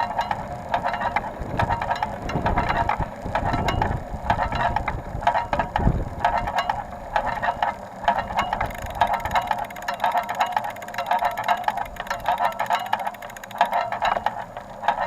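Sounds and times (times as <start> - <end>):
bike wheel rattly clicking: 8.5 - 14.0.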